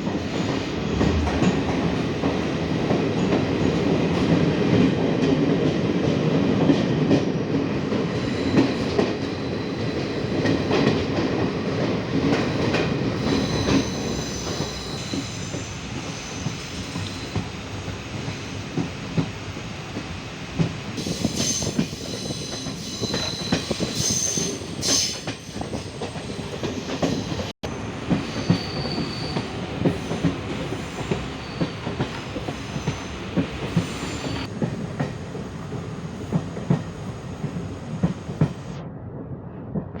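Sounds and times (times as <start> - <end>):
high wheel squeal: 21.1 - 27.5, 28.3 - 29.5, 30.8 - 31.8.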